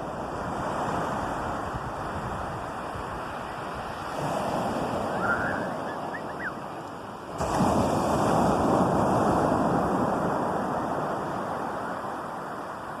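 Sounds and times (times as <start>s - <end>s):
sea waves on shore: 0.0s - 13.0s.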